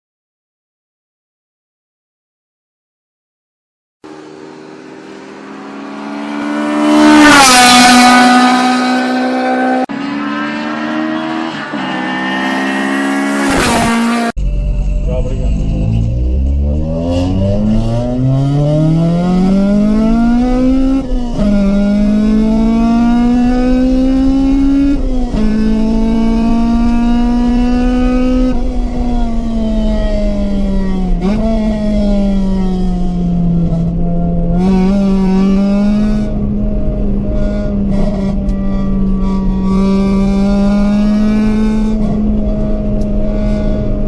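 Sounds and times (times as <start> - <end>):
car engine revving through gears: 4.1 - 44.0.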